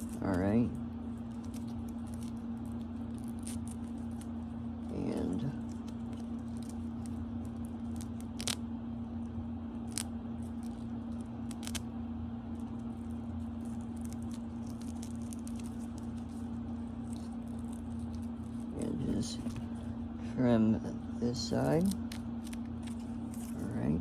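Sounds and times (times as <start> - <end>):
low electrical hum: 0.0 - 24.0
light rustling of small items: 12.4 - 20.0, 21.6 - 24.0.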